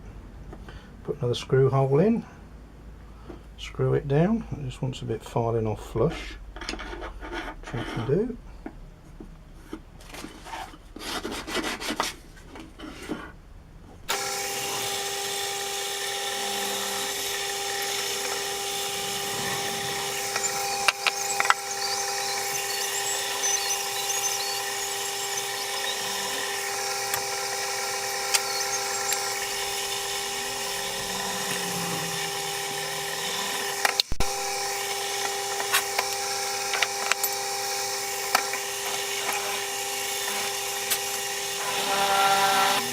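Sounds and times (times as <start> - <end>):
file scraping metal: 6.1 - 8.4, 10.4 - 12.2, 14.2 - 42.9
power tool motor running: 14.1 - 42.9.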